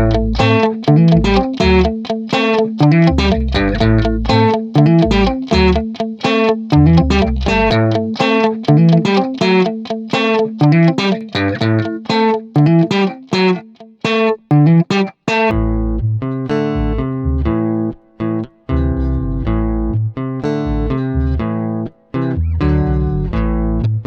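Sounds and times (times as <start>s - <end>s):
bass notes: 0.0s - 2.0s, 2.8s - 5.8s, 6.7s - 9.0s, 15.5s - 24.0s
guitar picking plucked notes: 0.0s - 24.0s.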